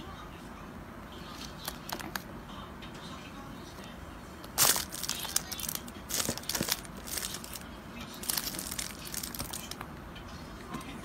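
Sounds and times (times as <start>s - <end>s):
crinkling rustling: 4.4s - 9.8s.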